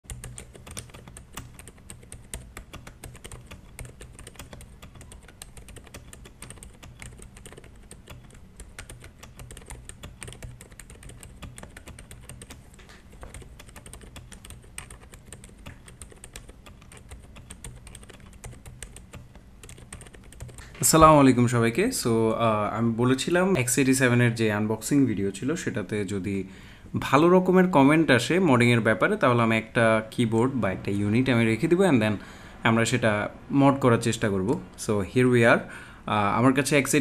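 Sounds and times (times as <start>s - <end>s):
mechanical keyboard typing: 0.0s - 21.0s.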